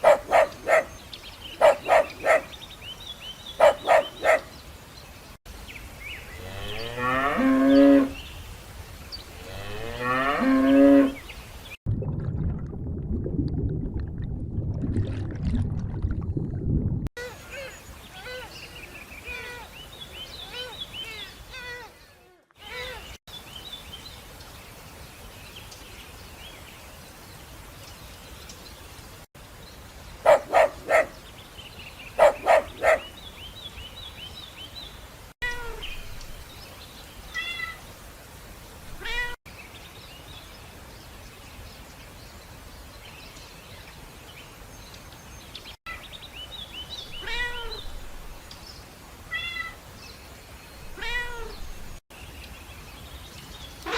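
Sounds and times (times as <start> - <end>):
cats meowing: 39.0 - 39.4, 47.2 - 47.8, 50.9 - 51.6.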